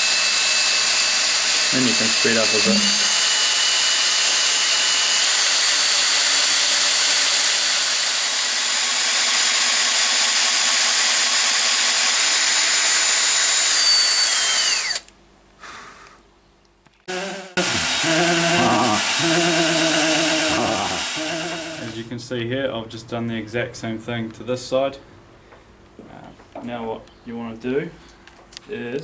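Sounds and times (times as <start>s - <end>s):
power drill boring into wood: 0.0s - 15.1s, 17.1s - 22.1s.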